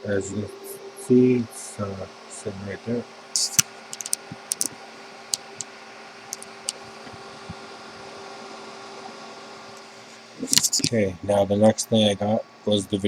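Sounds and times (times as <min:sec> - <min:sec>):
fan hum with whine: 0:00.0 - 0:13.0.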